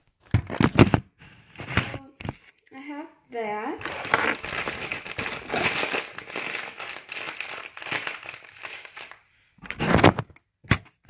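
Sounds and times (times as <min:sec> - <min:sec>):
bag crinkling: 0:03.8 - 0:09.2.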